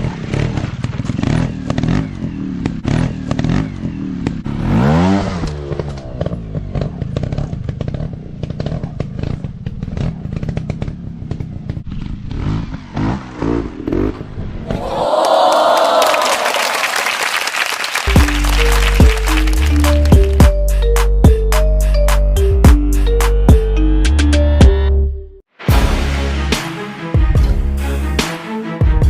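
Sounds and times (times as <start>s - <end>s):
motorcycle engine revving: 0.0s - 14.7s.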